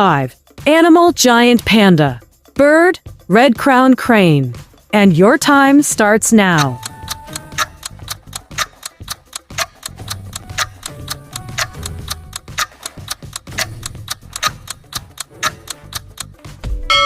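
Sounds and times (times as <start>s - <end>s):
clock ticking fast: 6.2s - 17.0s.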